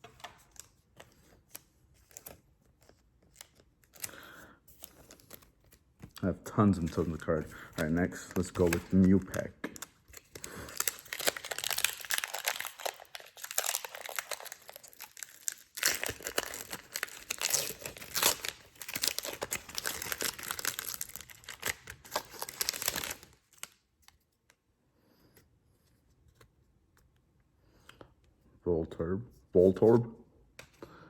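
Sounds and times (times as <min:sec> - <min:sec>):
foil wrapper crinkling and tearing: 0:01.5 - 0:23.8.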